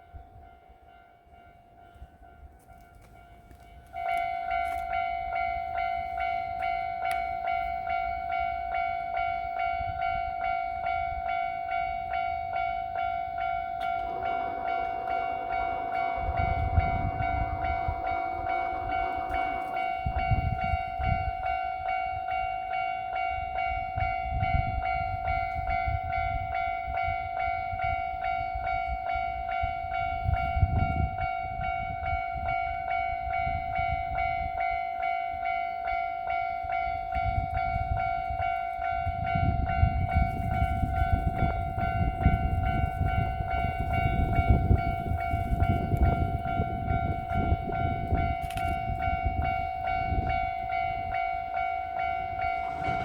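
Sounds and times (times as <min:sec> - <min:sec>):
level-crossing warning bell: 0:00.0 - 0:53.0
train rumble and wheel clatter: 0:00.0 - 0:53.0
train horn: 0:12.8 - 0:22.1, 0:39.9 - 0:53.0.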